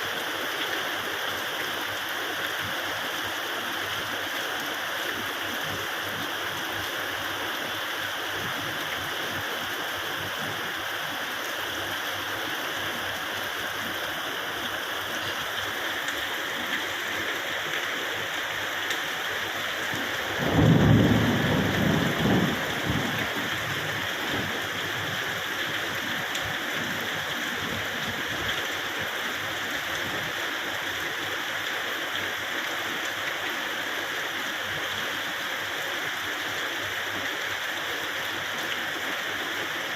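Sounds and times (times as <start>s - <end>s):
steady rain falling: 0.0s - 39.9s
low rumble of thunder: 20.2s - 25.4s.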